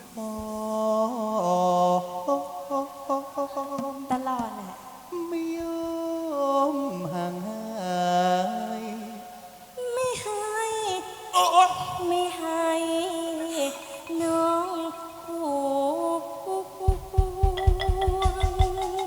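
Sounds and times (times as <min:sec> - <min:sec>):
low drum beats: 0:16.9 - 0:19.0.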